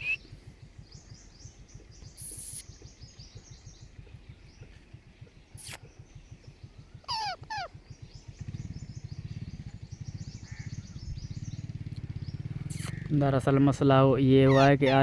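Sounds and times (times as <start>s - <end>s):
low steady throbbing: 0.0s - 14.8s
small birds chirping: 0.0s - 15.0s
parrot squawking: 7.1s - 7.7s, 14.4s - 15.0s.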